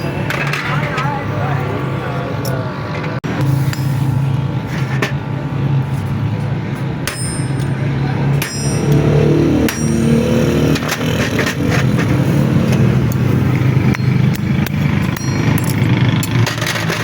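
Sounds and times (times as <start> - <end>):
engine running: 0.0 - 17.0
sharp clicks and knocks: 10.7 - 17.0.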